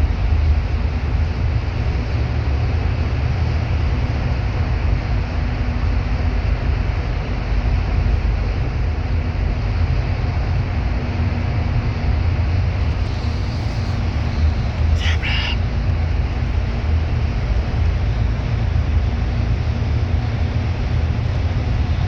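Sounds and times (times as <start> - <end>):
bus engine and road noise: 0.0 - 22.0
faint steady hum: 12.4 - 18.8.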